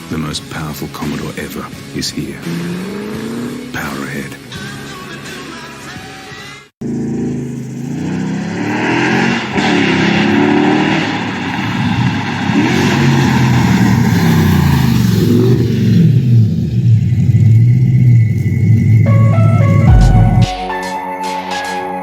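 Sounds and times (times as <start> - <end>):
car engine accelerating: 0.9 - 4.2, 6.8 - 20.7.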